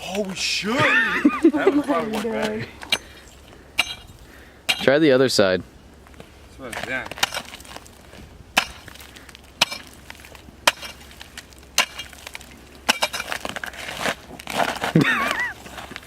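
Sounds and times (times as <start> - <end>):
pickaxe striking ice: 8.6 - 8.9, 9.6 - 10.0, 10.6 - 11.2, 11.8 - 12.2, 12.9 - 15.4.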